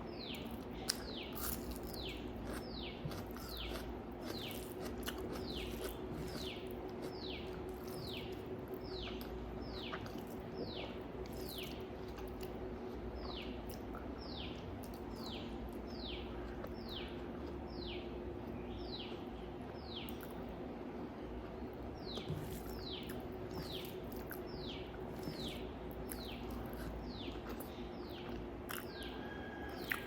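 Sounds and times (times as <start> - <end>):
steady low hum: 0.0 - 30.0
bird chirping: 22.0 - 30.0.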